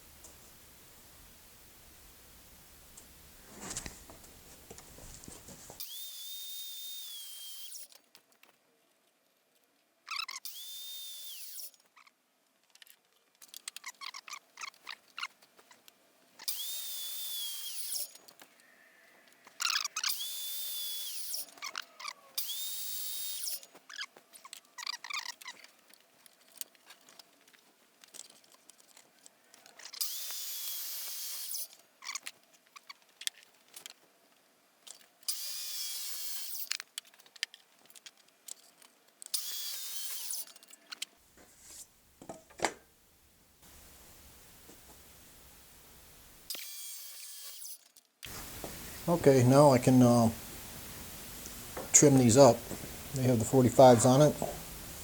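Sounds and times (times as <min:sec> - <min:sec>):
clicks and handling noises: 0:03.0 - 0:05.8, 0:12.5 - 0:16.0, 0:23.6 - 0:30.0, 0:31.7 - 0:35.3, 0:36.6 - 0:39.4.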